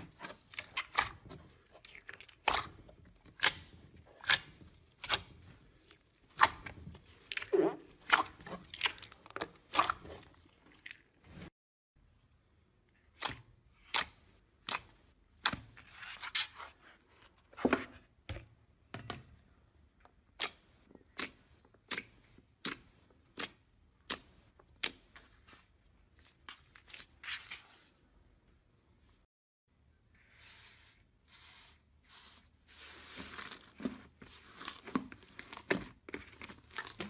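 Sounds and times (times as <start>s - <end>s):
slime squishing: 0.0s - 11.5s, 30.4s - 37.0s.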